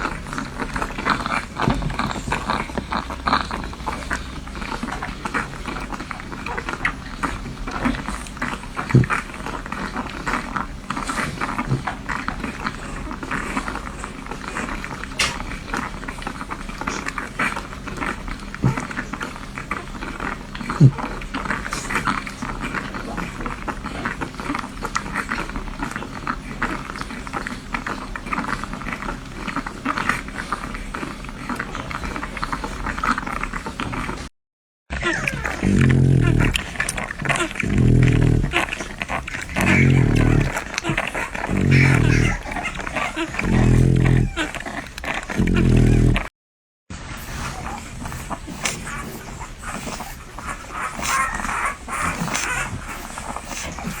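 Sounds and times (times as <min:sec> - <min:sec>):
puppies suckling: 0:00.0 - 0:34.3, 0:34.9 - 0:46.3, 0:47.2 - 0:54.0
small puppy squeaks: 0:49.8 - 0:52.8.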